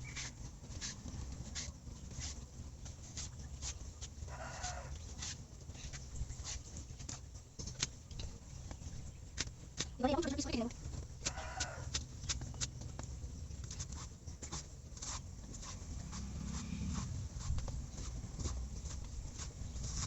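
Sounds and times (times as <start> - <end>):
knife chopping stems: 11.2 - 12.7.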